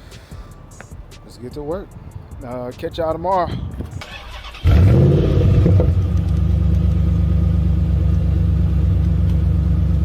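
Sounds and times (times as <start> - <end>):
car engine starting and idling: 3.5 - 10.0.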